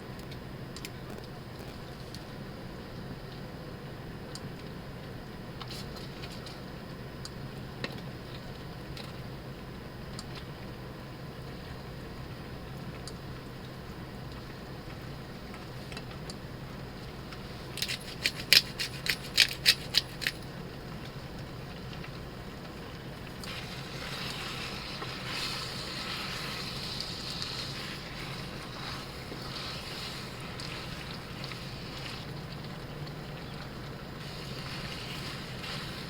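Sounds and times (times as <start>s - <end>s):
low steady hum: 0.0s - 36.0s
steady hiss: 11.2s - 36.0s.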